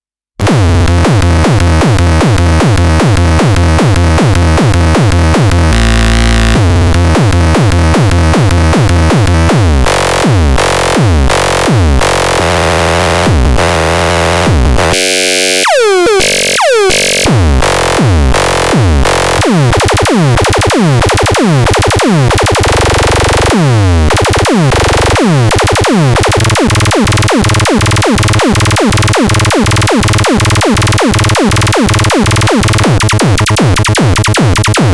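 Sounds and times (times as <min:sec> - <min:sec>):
drum machine beat: 0:00.4 - 0:05.8, 0:06.4 - 0:12.1, 0:15.8 - 0:34.9
synthesizer pattern: 0:14.8 - 0:34.9.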